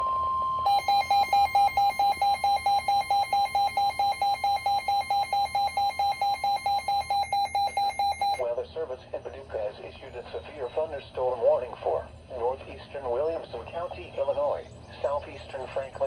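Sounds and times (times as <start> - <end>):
steady alarm tone: 0.0 - 8.4
rapid electronic alarm beeping: 0.6 - 8.4.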